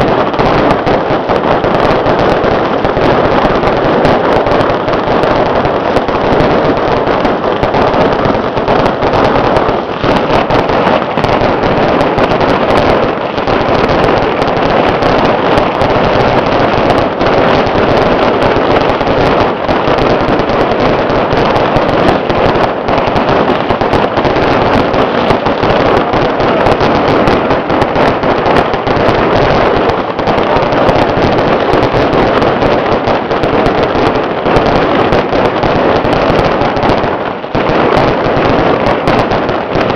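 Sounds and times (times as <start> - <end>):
firecrackers crackling: 0.0 - 39.9.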